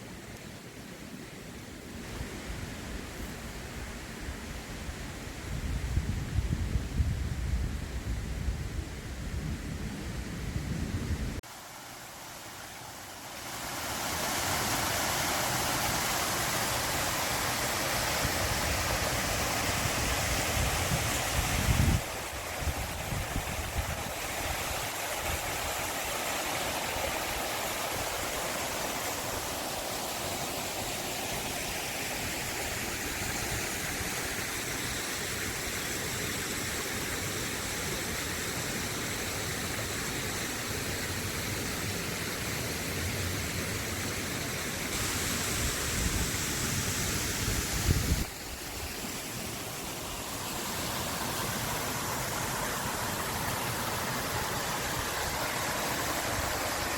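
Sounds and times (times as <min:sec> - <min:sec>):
stream water rushing: 0:11.4 - 0:56.9.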